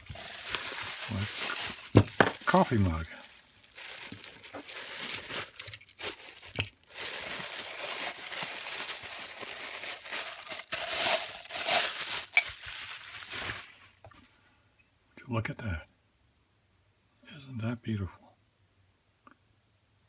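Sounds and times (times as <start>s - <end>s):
wrapping crinkling and rustling: 0.0s - 14.4s.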